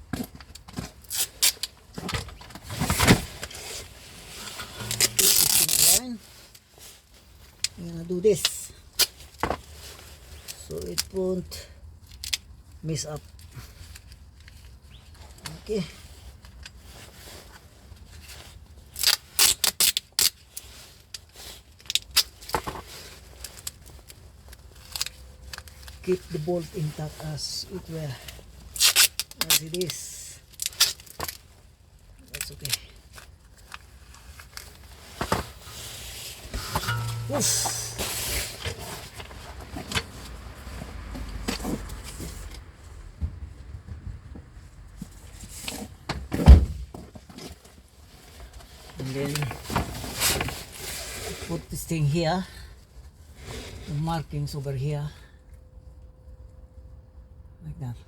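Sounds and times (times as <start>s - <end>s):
low steady hum: 4.3s - 6.3s, 36.6s - 38.9s
metal tools and bolts clinking: 4.4s - 6.0s, 36.6s - 38.7s.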